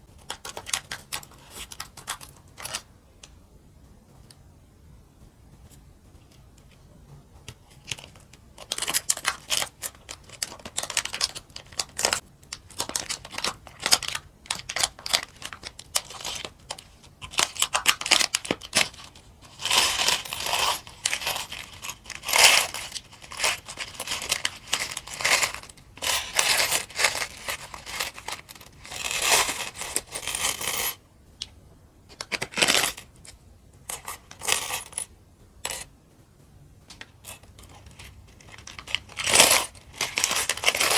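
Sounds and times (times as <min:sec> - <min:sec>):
plastic bricks rustling: 0:07.7 - 0:31.0, 0:36.9 - 0:40.9.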